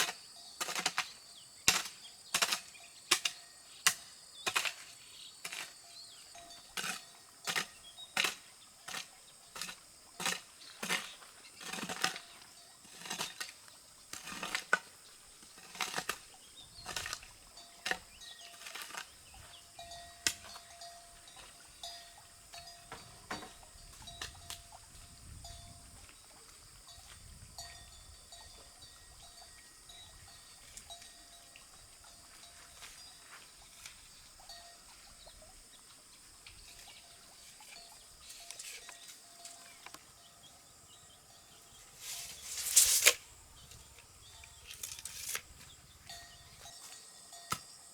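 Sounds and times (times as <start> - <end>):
faint steady ringing tone: 5.6 - 8.2, 17.4 - 42.0, 43.4 - 47.9.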